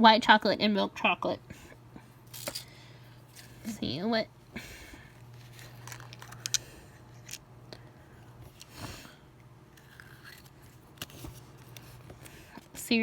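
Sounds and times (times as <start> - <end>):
paper rustling: 9.8 - 12.6.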